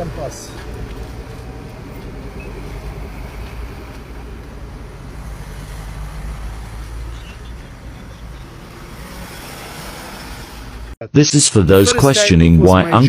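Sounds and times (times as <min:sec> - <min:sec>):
vehicles driving past: 0:00.0 - 0:11.0.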